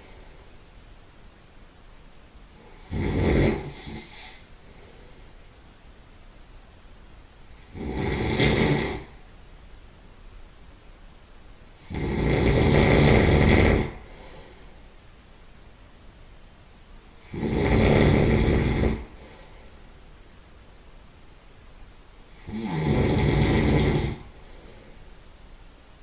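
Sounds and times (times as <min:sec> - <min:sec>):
nasal snoring: 0:02.6 - 0:05.0, 0:07.6 - 0:09.2, 0:11.8 - 0:14.6, 0:17.2 - 0:19.6, 0:22.3 - 0:25.0.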